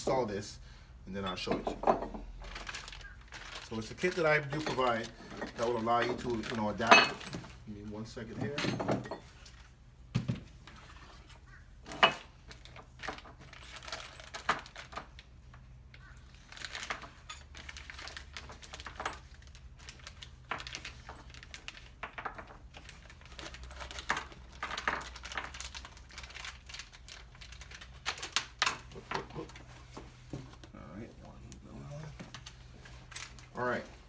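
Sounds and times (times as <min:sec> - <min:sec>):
metal parts and tools clinking: 0:01.2 - 0:07.5, 0:08.3 - 0:09.6, 0:16.5 - 0:26.5.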